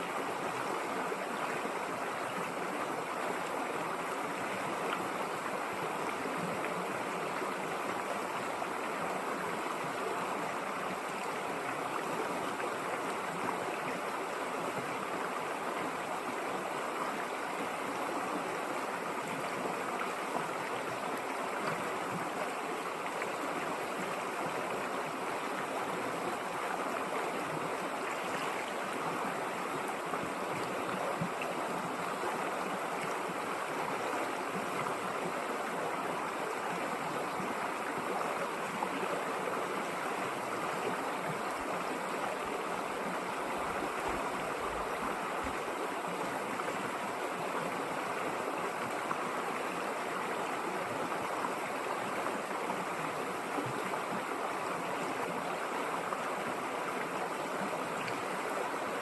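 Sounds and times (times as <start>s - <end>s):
river flowing over stones: 0.0s - 59.0s.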